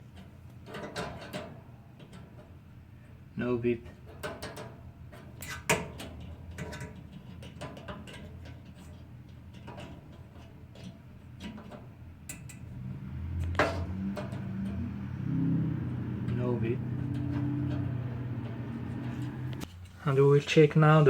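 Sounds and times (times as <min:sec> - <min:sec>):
low hum: 0:12.5 - 0:19.6.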